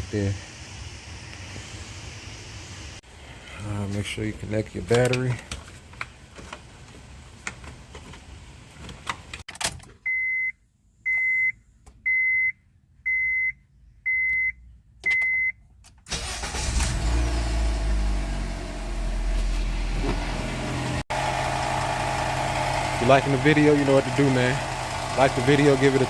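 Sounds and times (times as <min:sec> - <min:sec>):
car warning chime beeping: 0:10.1 - 0:15.6
car engine starting and running: 0:15.9 - 0:26.0.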